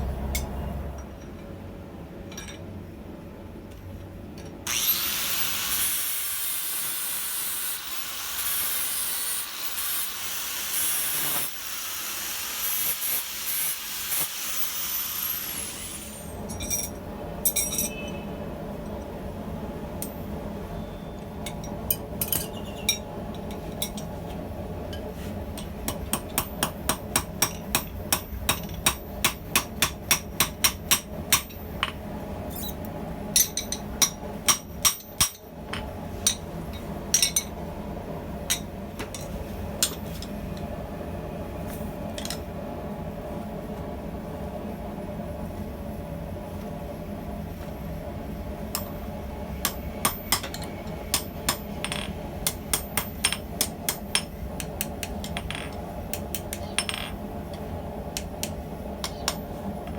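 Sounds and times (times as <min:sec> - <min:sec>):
hammer striking steel on anvil: 0:00.2 - 0:00.6, 0:16.4 - 0:18.2, 0:25.0 - 0:37.6, 0:38.5 - 0:40.3, 0:48.7 - 0:57.6, 0:58.2 - 0:59.5
background hum: 0:16.2 - 0:59.9.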